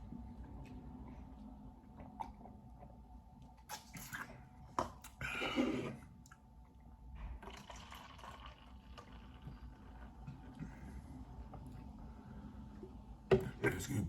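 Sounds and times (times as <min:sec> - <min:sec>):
wet slurping: 0:03.7 - 0:04.4.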